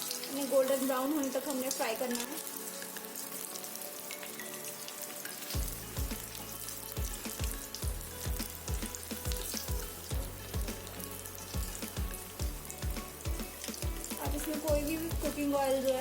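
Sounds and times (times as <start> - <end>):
deep-frying sizzle with crackles: 0.0 - 16.0
background music with low beat: 5.5 - 15.7.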